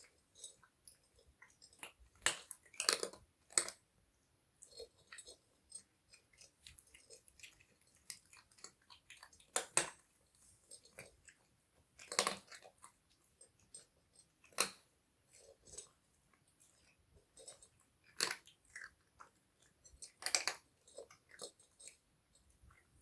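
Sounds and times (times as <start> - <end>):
kittens crunching dry kibble: 0.0 - 23.0.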